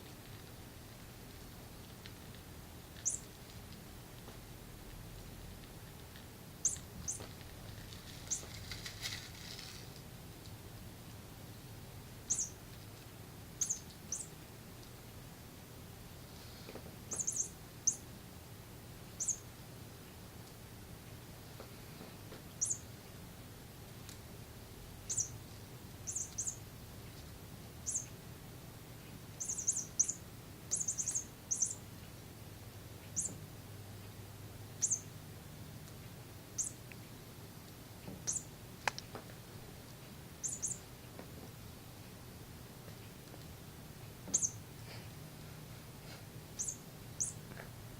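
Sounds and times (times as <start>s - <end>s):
cat chirping squeakily: 12.3s - 12.6s, 13.6s - 14.3s, 17.1s - 18.0s, 19.2s - 19.4s, 22.6s - 22.8s, 25.1s - 25.4s, 26.1s - 26.6s, 27.8s - 28.1s, 29.4s - 31.8s, 34.8s - 35.1s, 38.3s - 38.5s, 40.4s - 40.8s, 44.3s - 44.6s, 46.6s - 47.4s.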